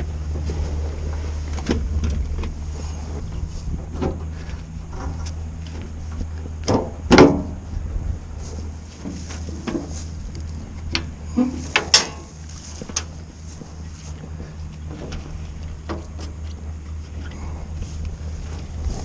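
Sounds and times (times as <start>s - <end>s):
clunks and knocks: 0.0s - 7.6s, 9.0s - 10.0s, 14.4s - 16.5s.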